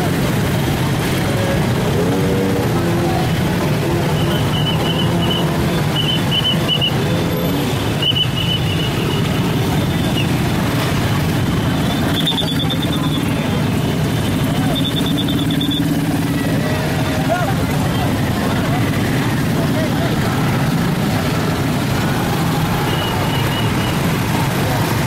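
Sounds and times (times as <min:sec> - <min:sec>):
street traffic and crowd: 0:00.0 - 0:25.0
melodic vehicle horns: 0:01.2 - 0:16.3.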